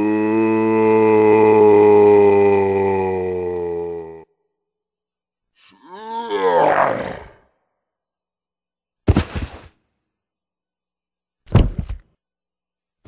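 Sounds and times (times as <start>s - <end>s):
animal roar: 5.8s - 7.5s.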